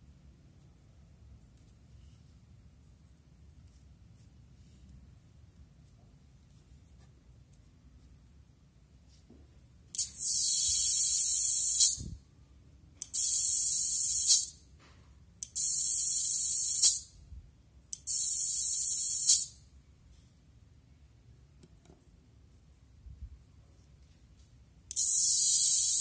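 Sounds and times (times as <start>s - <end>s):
electronic air brake hiss: 10.0s - 12.2s, 13.0s - 14.6s, 15.4s - 17.1s, 18.0s - 19.6s, 24.9s - 26.0s.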